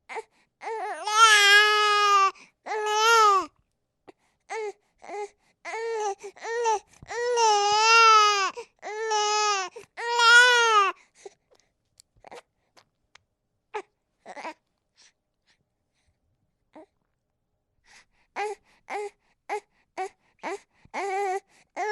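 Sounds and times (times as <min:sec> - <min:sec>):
infant crying: 0:00.1 - 0:03.5, 0:04.5 - 0:11.0, 0:13.8 - 0:14.6, 0:18.4 - 0:21.9.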